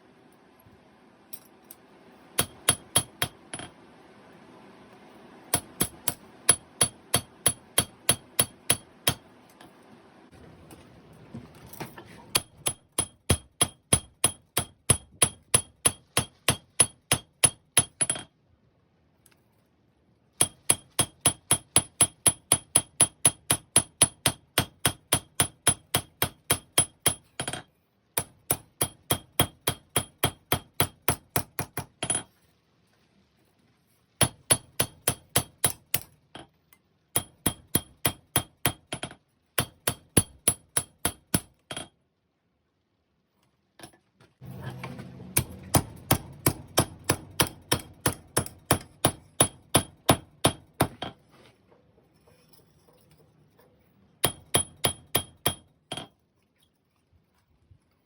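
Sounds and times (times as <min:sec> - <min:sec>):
hammer on steel anvil: 0:02.4 - 0:03.7, 0:05.5 - 0:09.2, 0:12.3 - 0:18.3, 0:20.4 - 0:32.3, 0:34.2 - 0:36.1, 0:37.2 - 0:41.9, 0:45.4 - 0:51.2, 0:54.2 - 0:56.1.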